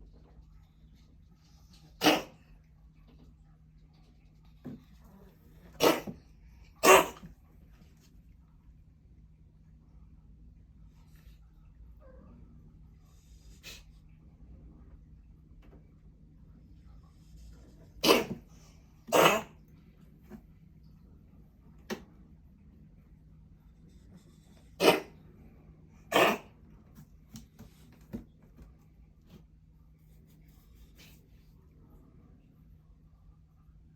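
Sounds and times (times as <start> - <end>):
pet coughing: 1.9 - 2.5, 5.6 - 7.4, 17.9 - 19.7, 24.6 - 25.2, 26.0 - 26.6.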